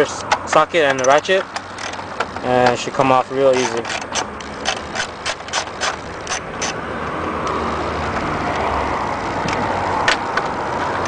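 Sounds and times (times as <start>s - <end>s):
ratchet clicking: 0.2s - 6.8s
steady rasping noise: 0.2s - 10.1s.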